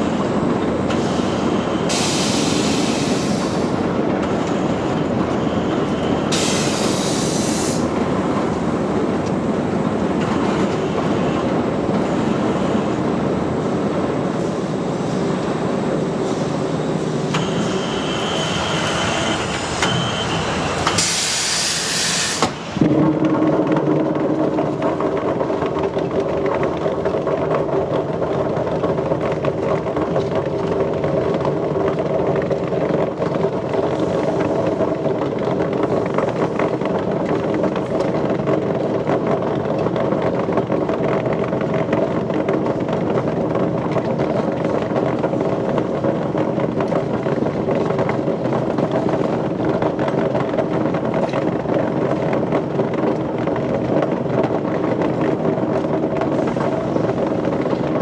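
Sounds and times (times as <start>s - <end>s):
machinery humming: 0.0s - 27.4s.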